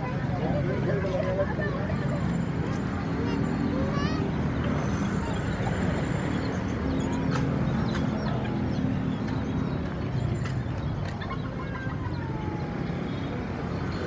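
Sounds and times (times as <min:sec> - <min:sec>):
road traffic rumble: 0:00.0 - 0:14.0
caged birds chirping: 0:04.2 - 0:14.0.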